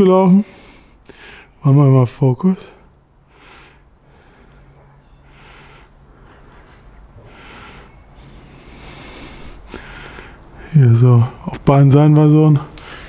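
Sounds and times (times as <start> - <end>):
low steady hum: 0.0 - 13.0
man breathing through nose: 0.4 - 1.6, 3.2 - 10.6, 12.8 - 13.0.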